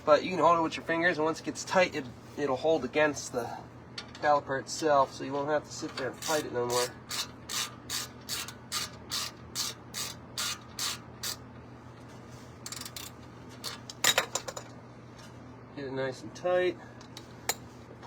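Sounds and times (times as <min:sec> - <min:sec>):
ratchet wrench clicking: 0:06.2 - 0:11.4.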